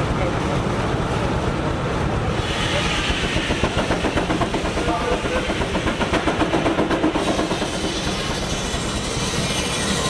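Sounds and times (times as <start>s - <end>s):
steam engine exhaust beating: 2.3s - 9.7s.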